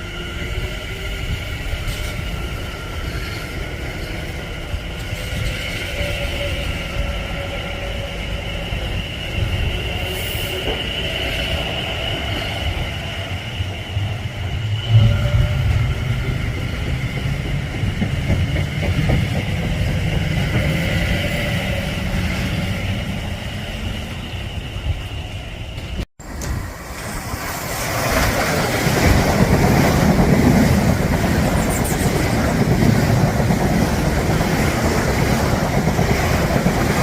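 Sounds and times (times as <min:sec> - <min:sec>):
train wheels rumbling on rails: 0:00.0 - 0:37.0
steady high-pitched tones: 0:07.9 - 0:18.7.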